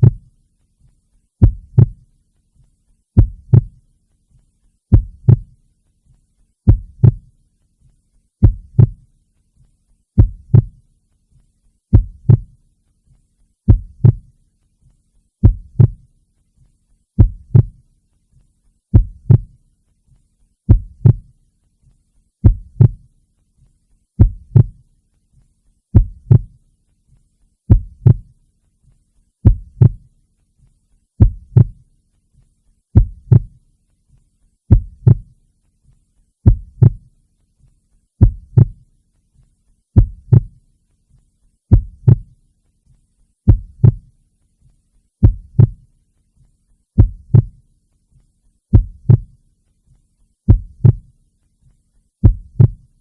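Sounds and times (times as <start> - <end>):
heartbeat: 0.0 - 0.3, 1.4 - 2.1, 3.2 - 3.8, 4.9 - 5.6, 6.6 - 7.4, 8.4 - 9.1, 10.2 - 10.9, 11.9 - 12.6, 13.7 - 14.3, 15.4 - 16.1, 17.2 - 17.9, 18.9 - 19.6, 20.7 - 21.4, 22.4 - 23.1, 24.2 - 24.9, 25.9 - 26.6, 27.7 - 28.4, 29.4 - 30.1, 31.2 - 31.8, 32.9 - 33.6, 34.7 - 35.4, 36.4 - 37.1, 38.2 - 38.9, 40.0 - 40.6, 41.7 - 42.4, 43.5 - 44.1, 45.2 - 45.9, 47.0 - 47.6, 48.7 - 49.4, 50.5 - 51.1, 52.2 - 52.9.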